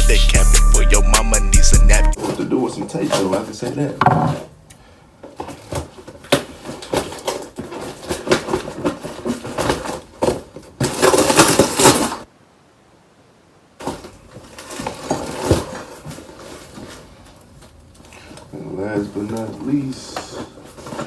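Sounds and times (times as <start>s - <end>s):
packaging rustling and tearing: 2.2s - 3.9s, 5.2s - 12.3s, 13.8s - 21.0s.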